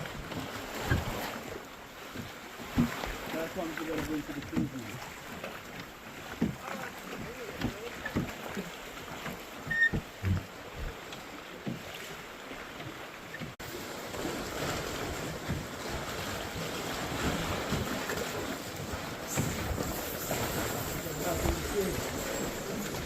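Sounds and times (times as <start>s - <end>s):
water rushing: 0.0s - 23.0s
low thumps: 9.7s - 11.0s.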